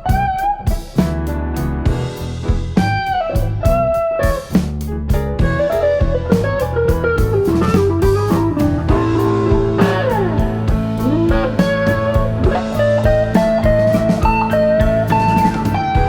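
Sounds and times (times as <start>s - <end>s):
bass: 0.0s - 16.0s
electric guitar melody: 0.0s - 16.0s
steady drum beat: 0.0s - 16.0s.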